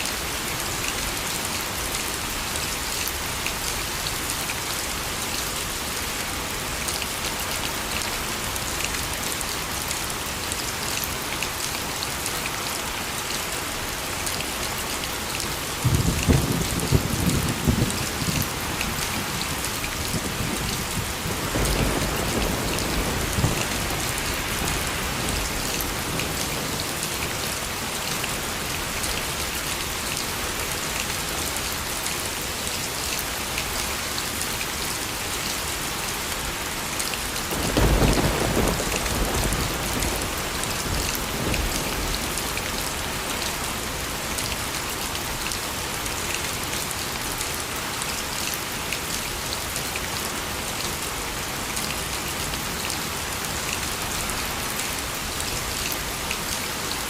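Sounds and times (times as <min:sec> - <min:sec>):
heavy rain hissing: 0:12.7 - 0:48.0
thunder cracking and rumbling: 0:15.8 - 0:26.8, 0:37.5 - 0:42.1.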